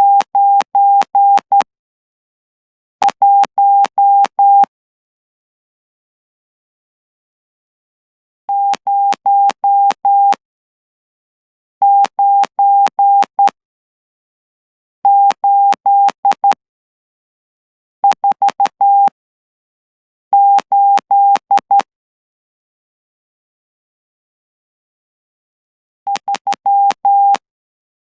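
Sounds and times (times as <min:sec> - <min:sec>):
morse code beeps: 0:00.0 - 0:01.7, 0:03.1 - 0:04.7, 0:08.5 - 0:10.4, 0:11.8 - 0:13.6, 0:15.1 - 0:16.6, 0:18.1 - 0:19.2, 0:20.4 - 0:21.9, 0:26.1 - 0:27.4.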